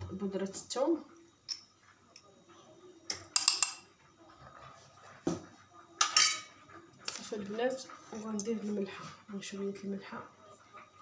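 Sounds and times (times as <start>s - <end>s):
spoon clinking against dish: 3.1s - 3.9s, 6.0s - 6.5s.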